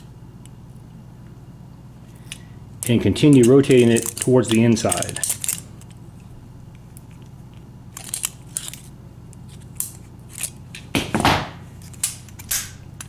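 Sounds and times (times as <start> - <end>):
small metal clicks and scrapes: 2.2 - 6.0, 7.9 - 10.6.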